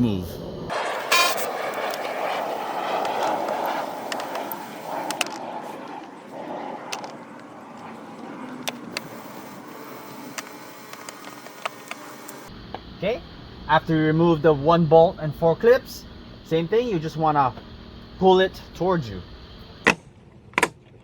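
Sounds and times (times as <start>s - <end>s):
sharp plastic clicks: 3.0s - 6.0s, 10.1s - 12.5s.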